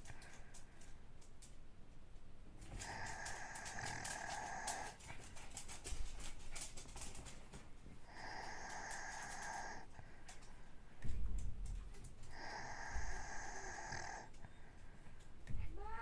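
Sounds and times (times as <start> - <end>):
faint clicks: 2.6 - 7.5, 8.1 - 10.6
whistling wheezing snore: 8.1 - 9.9, 12.3 - 14.3.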